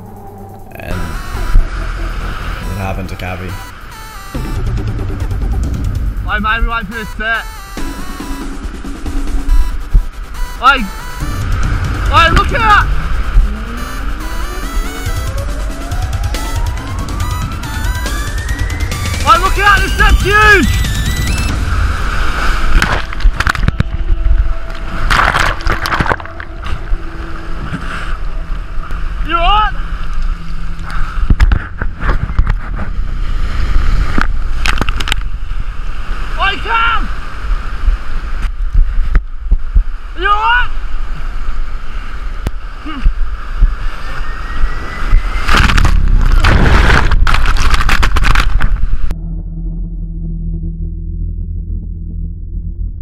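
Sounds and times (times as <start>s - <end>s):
ocean surf crashing over rocks: 10.1s - 13.5s, 33.0s - 38.4s
wind buffeting microphone: 29.8s - 36.3s.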